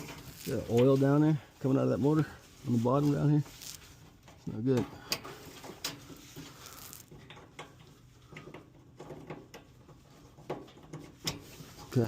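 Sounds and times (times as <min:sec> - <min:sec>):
light clicks and taps of tools: 0:03.6 - 0:12.0.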